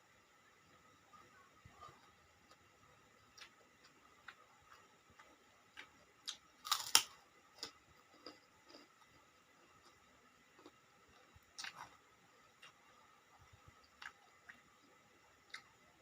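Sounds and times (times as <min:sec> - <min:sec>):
person chewing: 0:03.3 - 0:12.9.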